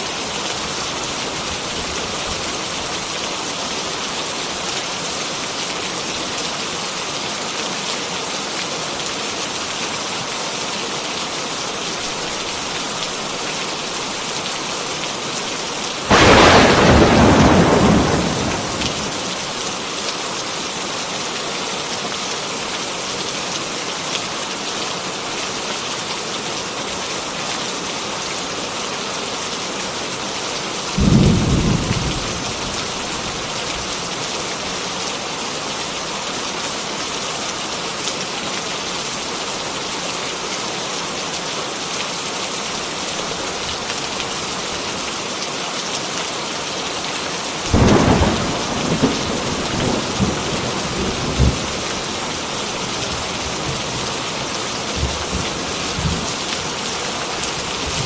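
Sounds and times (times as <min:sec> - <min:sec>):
heavy rain falling: 0:00.0 - 0:58.0
thunder clap and rumble: 0:16.1 - 0:19.5.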